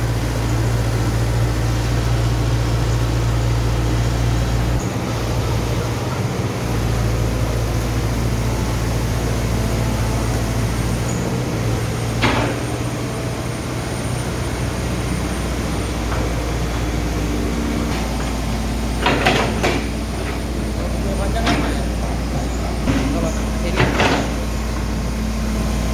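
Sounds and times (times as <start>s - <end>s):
diesel engine idling: 0.0s - 25.9s
sharp knocks: 12.1s - 13.0s, 17.8s - 24.9s.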